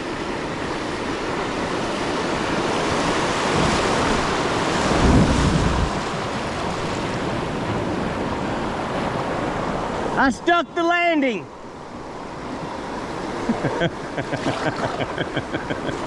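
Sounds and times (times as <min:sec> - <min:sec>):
water rushing over dam: 0:01.0 - 0:16.0
kayak landing splash: 0:14.3 - 0:15.2.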